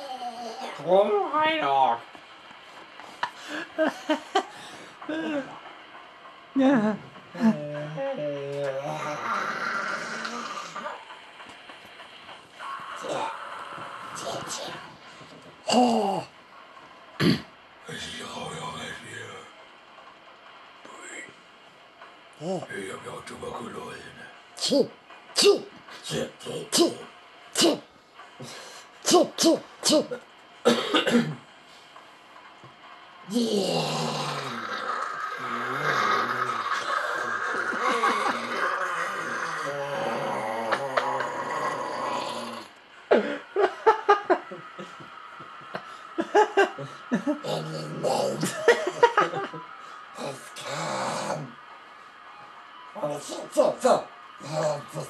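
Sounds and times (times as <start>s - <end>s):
person making coughing throat noises: 17.2s - 17.5s, 30.7s - 31.4s.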